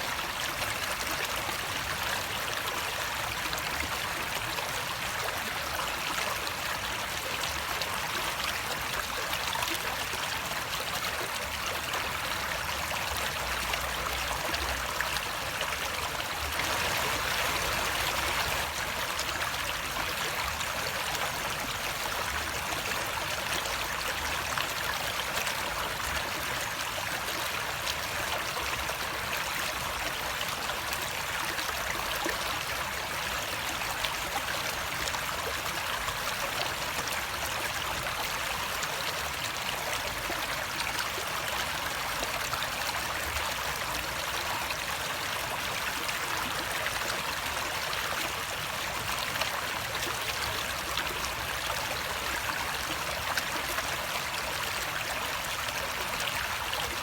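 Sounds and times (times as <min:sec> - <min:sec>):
water rushing: 0:15.1 - 0:23.1.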